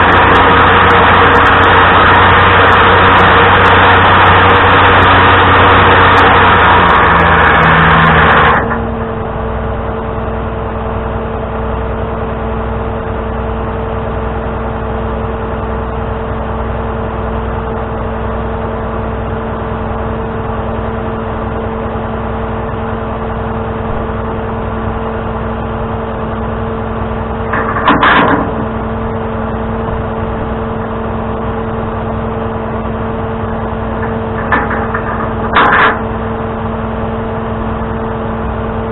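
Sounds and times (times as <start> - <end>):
loud engine noise: 0.0 - 38.9
truck engine hum: 0.0 - 38.9.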